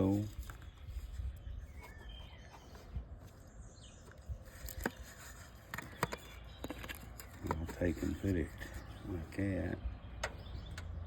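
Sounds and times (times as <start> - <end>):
plastic parts clicking and knocking: 5.6 - 8.1.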